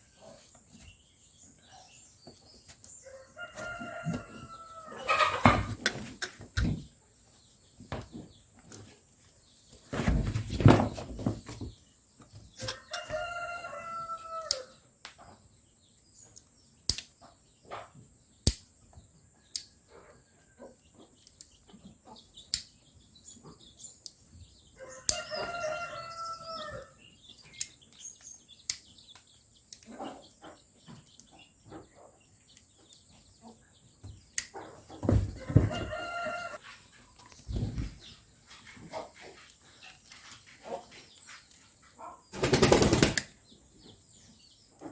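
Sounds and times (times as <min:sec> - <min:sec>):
rooster crowing: 0:03.1 - 0:05.7, 0:12.6 - 0:14.7, 0:24.8 - 0:27.0, 0:35.4 - 0:36.6.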